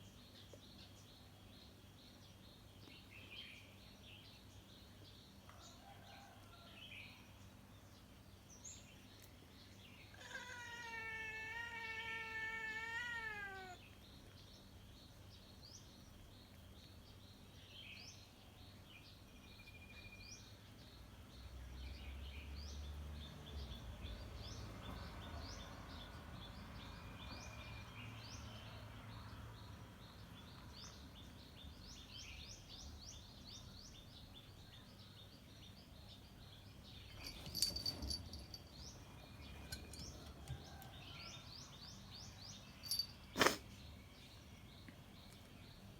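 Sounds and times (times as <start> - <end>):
cat meowing: 10.1 - 13.8.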